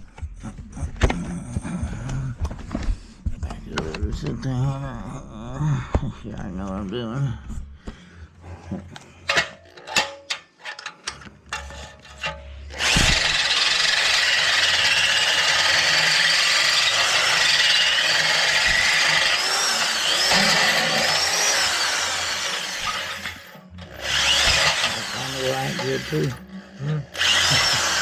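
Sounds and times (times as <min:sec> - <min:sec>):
power drill grinding: 0:10.9 - 0:28.0.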